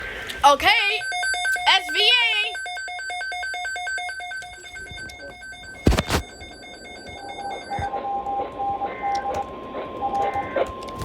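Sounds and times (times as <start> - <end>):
steady warning tone: 0.6 - 10.8
lower tone beeping: 0.9 - 9.4.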